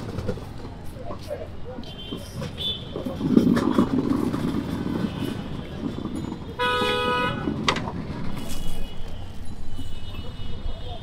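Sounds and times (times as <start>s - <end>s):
street traffic: 0.0s - 11.0s
vehicle horn honking: 6.6s - 7.5s.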